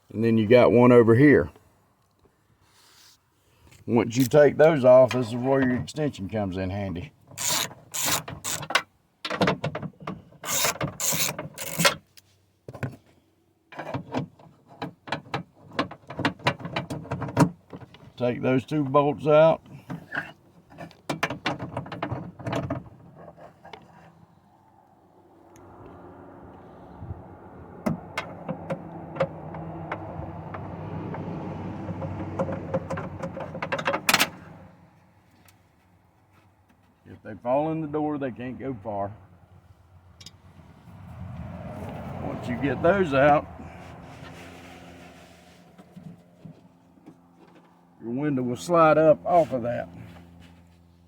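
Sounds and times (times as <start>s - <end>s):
ratchet clicking: 7.4s - 8.7s.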